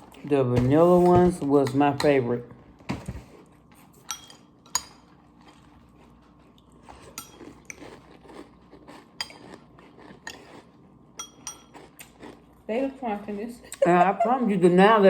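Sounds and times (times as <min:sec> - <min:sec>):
spoon clinking against a bowl: 0:04.0 - 0:05.1, 0:07.1 - 0:07.8, 0:09.2 - 0:09.6, 0:11.2 - 0:12.1
dry cereal crunching: 0:05.2 - 0:10.9, 0:11.7 - 0:12.5.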